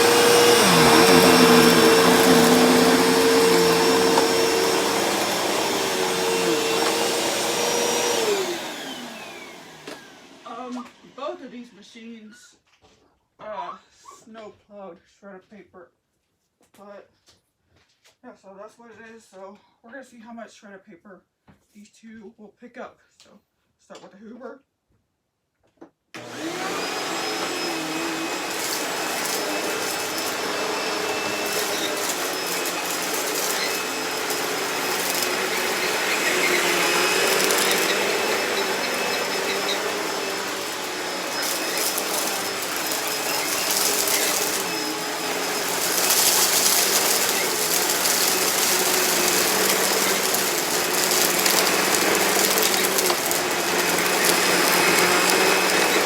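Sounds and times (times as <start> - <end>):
paper bits rattling in vacuum: 0.0 - 10.1, 26.2 - 56.0
vacuum cleaner motor whine: 0.0 - 11.2, 26.2 - 56.0.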